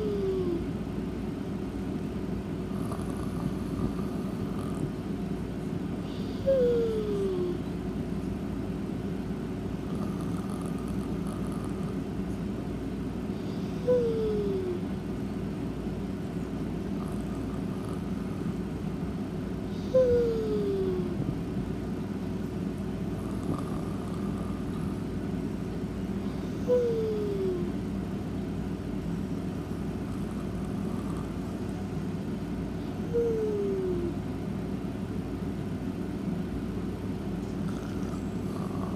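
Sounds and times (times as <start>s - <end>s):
low background hum: 0.0s - 38.9s
pet snoring with whistle: 2.8s - 4.9s, 9.9s - 12.0s, 23.2s - 24.9s, 37.7s - 38.9s.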